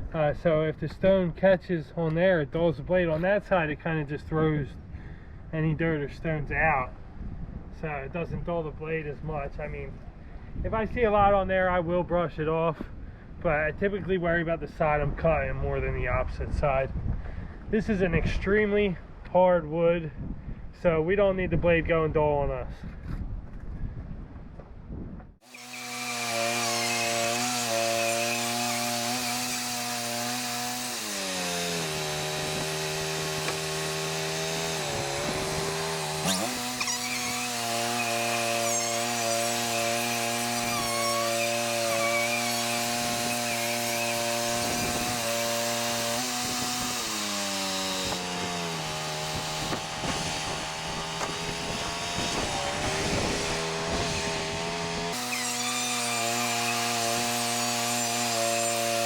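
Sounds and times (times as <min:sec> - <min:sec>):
band sawmill cutting log: 0:25.4 - 0:59.0.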